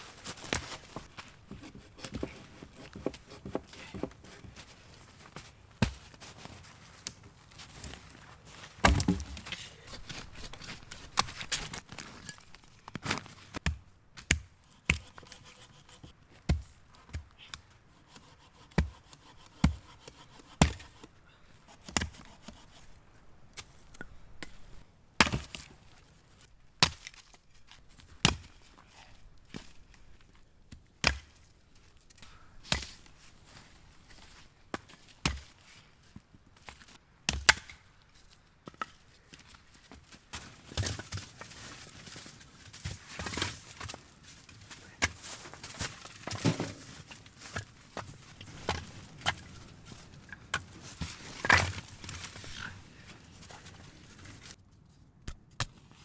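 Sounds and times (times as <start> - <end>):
axe chopping wood: 8.8 - 11.8, 16.5 - 17.3, 25.2 - 25.7, 31.0 - 31.3, 37.3 - 37.8, 45.0 - 46.9.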